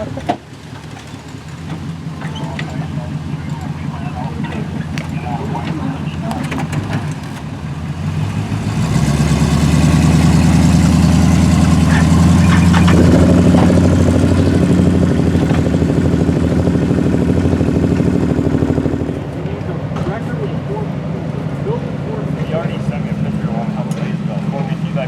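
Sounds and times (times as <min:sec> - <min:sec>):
metal clanks: 0:00.0 - 0:07.5
truck engine running: 0:00.0 - 0:25.0.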